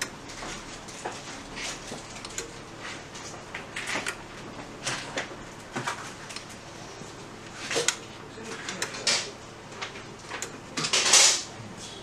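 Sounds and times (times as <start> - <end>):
steady low hum: 0.0 - 12.0
clicks and knocks of handling: 7.6 - 11.5.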